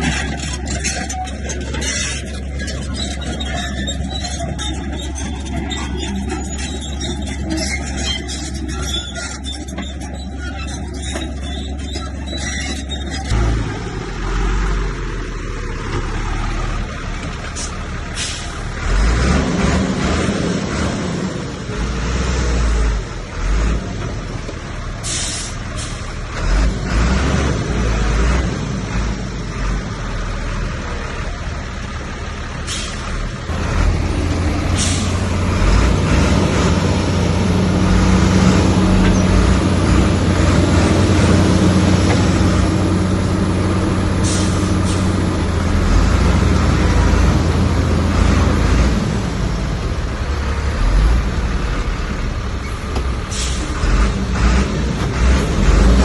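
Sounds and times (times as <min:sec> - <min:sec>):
diesel machinery engine: 0:00.0 - 0:56.0.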